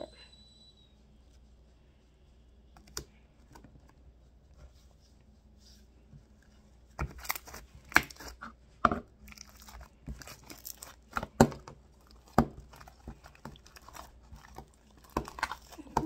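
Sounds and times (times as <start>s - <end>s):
slime squishing with pops and crackles: 6.4s - 16.0s.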